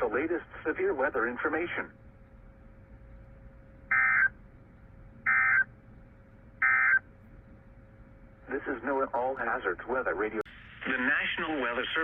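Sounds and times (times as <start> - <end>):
faint radio hiss: 0.0 - 3.8, 8.3 - 12.0.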